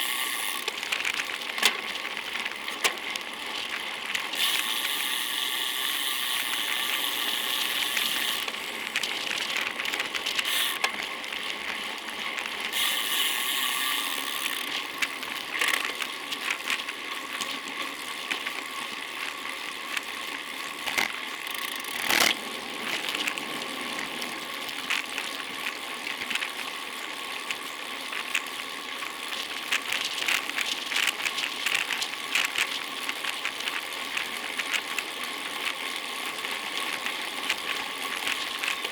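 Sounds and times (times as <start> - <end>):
bicycle tyre hiss: 0.0 - 0.7, 3.5 - 11.0, 11.8 - 16.4
freewheel hub clicking: 0.0 - 38.9.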